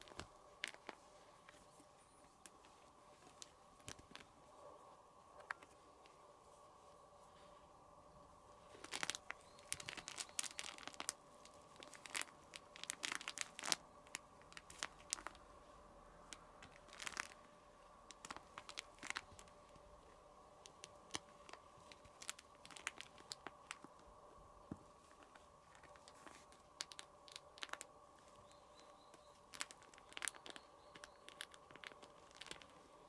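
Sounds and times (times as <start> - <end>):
crinkly cat toy rustling: 0.0 - 4.6, 8.4 - 24.2, 24.8 - 33.0
faint steady hum: 0.0 - 33.0.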